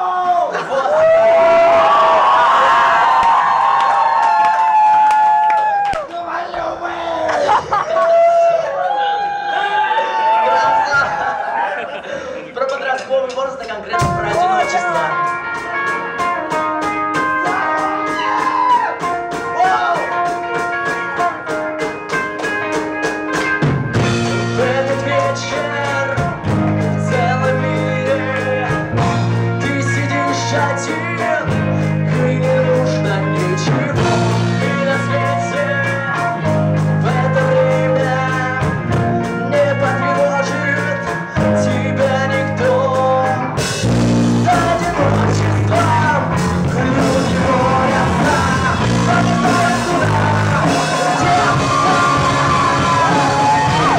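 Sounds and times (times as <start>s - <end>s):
live rock band: 7.3s - 53.9s
drums and cymbals: 13.8s - 41.8s, 42.7s - 53.9s
person singing: 24.2s - 43.6s, 44.3s - 53.9s.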